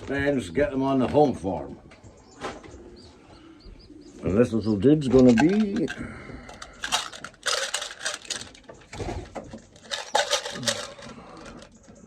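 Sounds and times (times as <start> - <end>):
rustling and clicking handling noise: 5.0 - 12.0.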